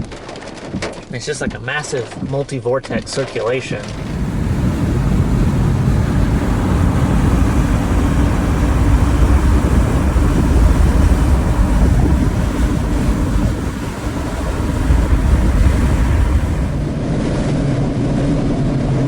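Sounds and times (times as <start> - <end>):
wind buffeting microphone: 3.8 - 17.6.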